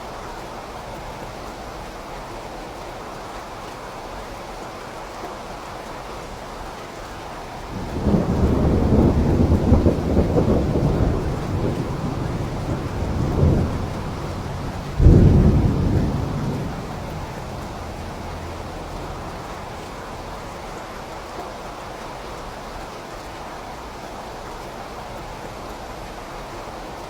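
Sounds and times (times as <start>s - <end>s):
steady rain: 0.0s - 27.0s
thunder rumbling: 7.6s - 20.8s
sharp thunder clap: 7.7s - 20.3s.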